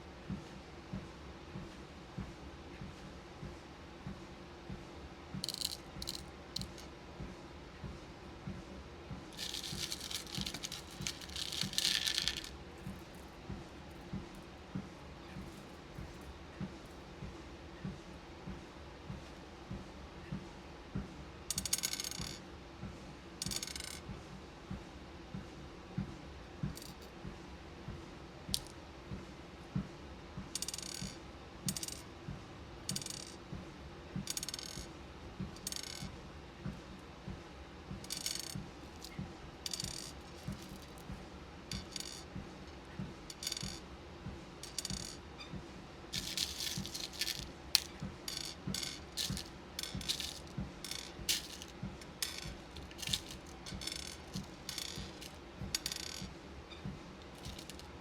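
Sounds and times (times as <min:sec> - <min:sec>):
beads clicking and rattling: 0:05.4 - 0:06.8, 0:09.4 - 0:13.3, 0:38.1 - 0:41.0, 0:44.7 - 0:45.2, 0:46.2 - 0:56.2, 0:57.2 - 0:57.9.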